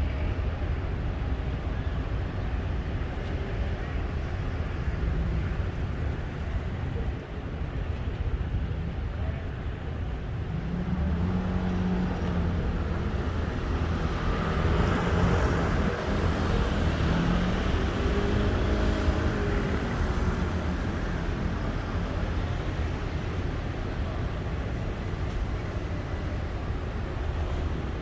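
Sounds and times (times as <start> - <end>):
train engine hum: 0.0 - 28.0.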